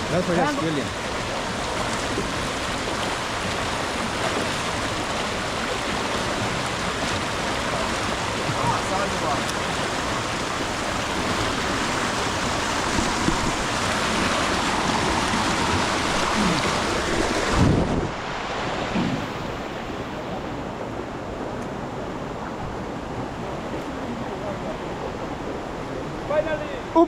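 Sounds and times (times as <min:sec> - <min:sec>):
waterfall rushing: 0:00.0 - 0:27.0
wind buffeting microphone: 0:09.9 - 0:24.1.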